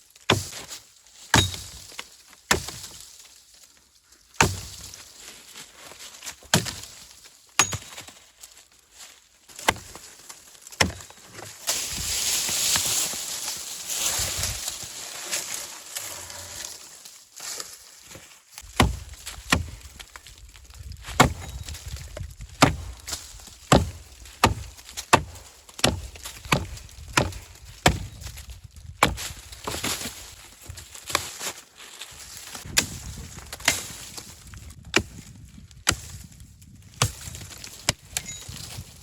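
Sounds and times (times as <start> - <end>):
wood being chopped: 0.2 - 0.7, 1.3 - 3.0, 4.4 - 5.0, 6.4 - 8.2, 9.5 - 10.1, 10.7 - 12.0, 18.6 - 20.2, 21.0 - 31.4, 32.6 - 36.3, 37.0 - 38.6.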